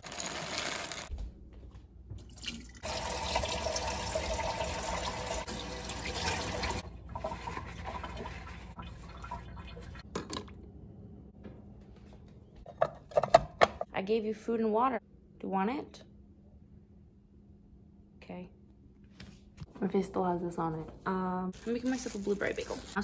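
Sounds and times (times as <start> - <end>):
water running from tap: 2.3 - 10.0, 21.6 - 23.0.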